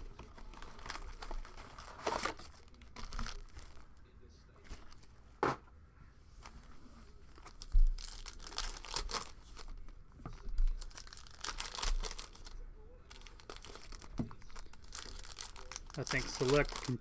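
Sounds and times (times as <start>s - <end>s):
plastic wrapping tearing and crinkling: 0.0s - 4.0s, 7.2s - 17.0s
handling knock: 5.4s - 5.7s.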